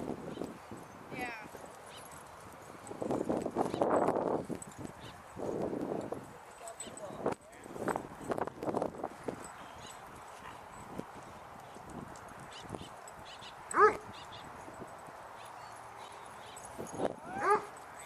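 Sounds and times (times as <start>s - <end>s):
dog barking: 13.7s - 14.1s, 17.4s - 17.7s.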